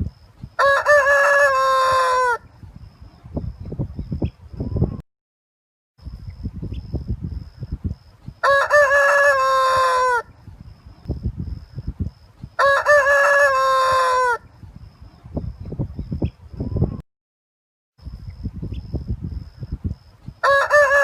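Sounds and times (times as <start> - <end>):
rooster crowing: 0.6 - 2.4, 8.4 - 10.3, 12.6 - 14.5, 20.4 - 21.0.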